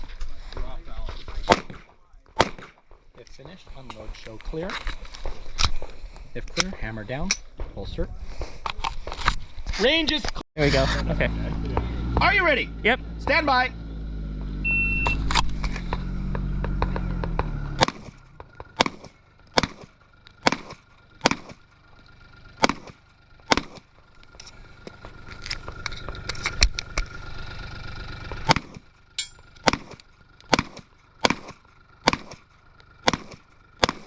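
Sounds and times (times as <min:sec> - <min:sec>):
airsoft pistol shots: 0:01.4 - 0:02.8, 0:17.8 - 0:18.1, 0:18.8 - 0:21.6, 0:22.6 - 0:23.8, 0:28.5 - 0:28.8, 0:29.6 - 0:32.4, 0:33.0 - 0:34.0
low engine-like drone: 0:10.6 - 0:34.0.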